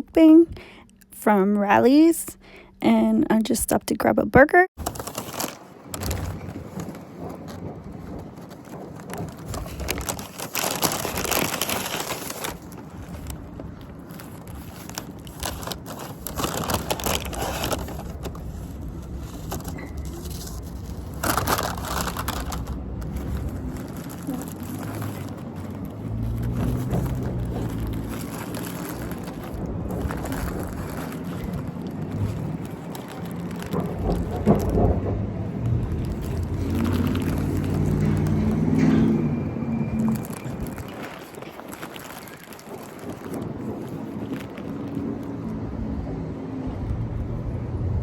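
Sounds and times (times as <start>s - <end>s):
paper bag and wrappers crinkling: 4.8s - 46.0s.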